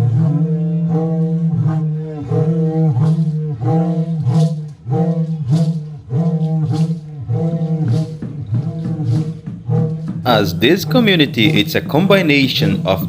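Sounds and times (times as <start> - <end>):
sharp percussive accents: 7.8 - 13.0.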